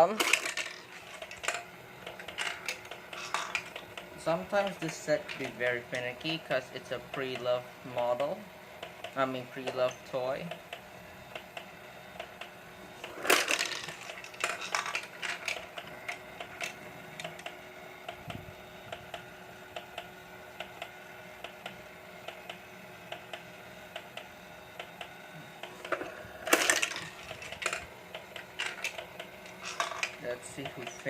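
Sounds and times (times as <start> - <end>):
plastic balls clattering: 0.0 - 1.6, 2.3 - 3.7, 13.2 - 15.7, 26.5 - 27.9, 29.6 - 30.2
toy motor hum: 0.0 - 11.6, 12.2 - 18.3, 24.8 - 31.0.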